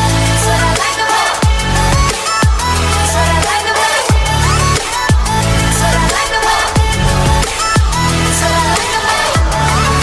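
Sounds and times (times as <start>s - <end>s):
electronic pop music: 0.2s - 10.0s
falling bass sweep: 4.2s - 10.0s.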